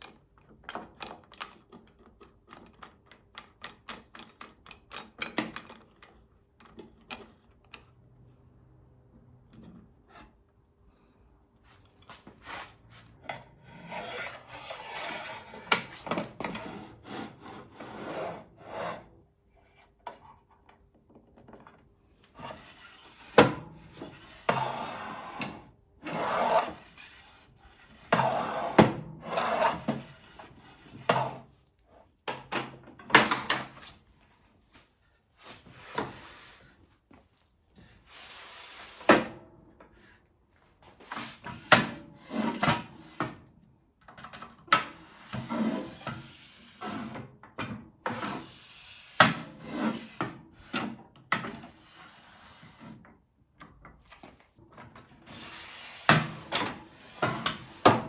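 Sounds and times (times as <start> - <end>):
hard parts rubbing and scraping: 12.0 - 19.1.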